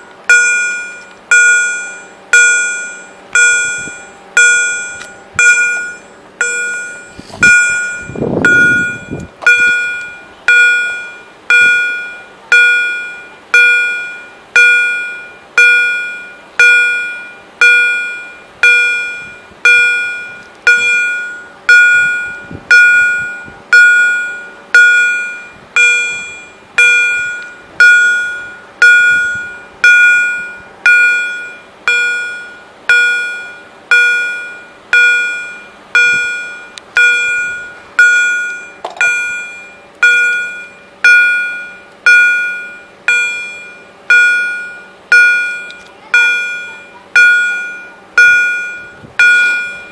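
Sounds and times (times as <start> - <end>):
level-crossing warning bells: 0.0 - 49.9
low whoosh: 4.8 - 10.3.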